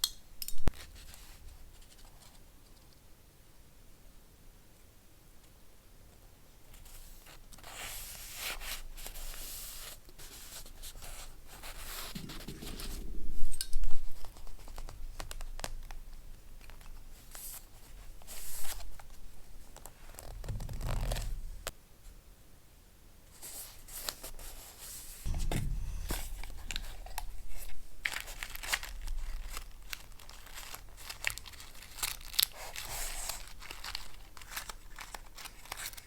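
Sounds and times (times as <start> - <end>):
low thumps: 12.1 - 15.4, 20.2 - 21.7, 25.3 - 30.3
paper rustling: 28.1 - 36.0.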